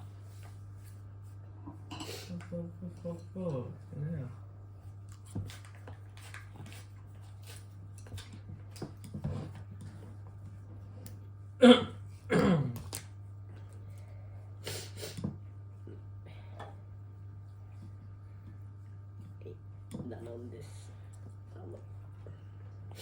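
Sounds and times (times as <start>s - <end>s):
child coughing: 11.6s - 12.8s.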